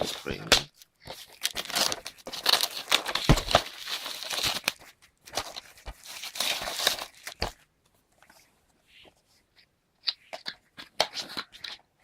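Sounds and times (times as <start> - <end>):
plastic shrink-wrap tearing: 1.2 - 4.8.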